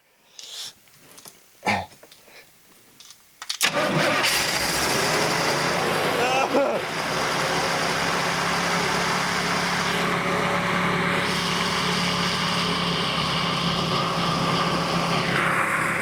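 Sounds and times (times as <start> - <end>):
engine running: 3.6 - 16.0.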